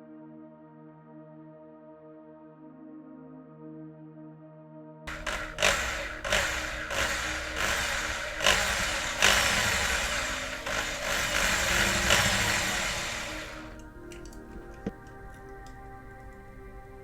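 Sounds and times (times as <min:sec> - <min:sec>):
soft background music: 0:00.0 - 0:05.0, 0:12.3 - 0:17.0
power tool running in bursts: 0:05.1 - 0:13.8.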